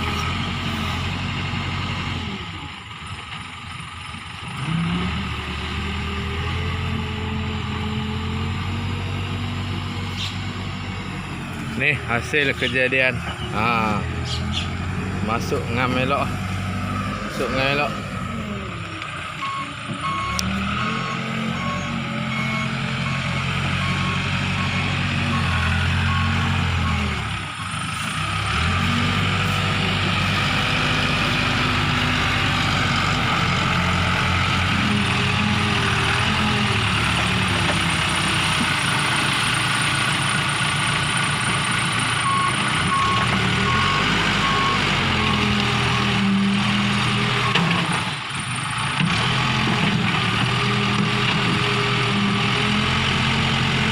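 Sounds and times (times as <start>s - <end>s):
backhoe diesel engine working: 0.0s - 53.9s
reversing alarm beeping: 19.4s - 27.1s, 42.2s - 46.1s.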